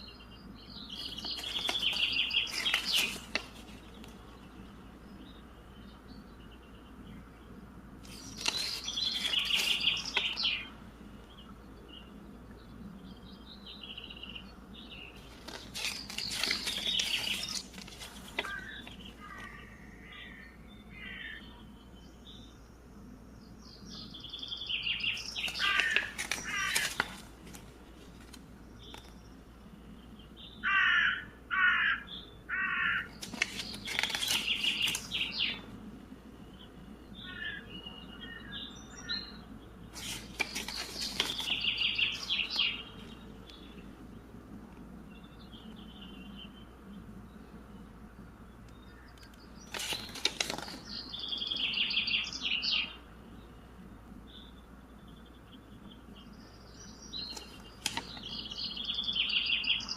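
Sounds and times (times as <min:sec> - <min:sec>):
birds calling: 0:00.0 - 0:59.9
crow cawing: 0:18.4 - 0:20.4, 0:25.6 - 0:26.8, 0:30.6 - 0:33.1, 0:37.2 - 0:37.7.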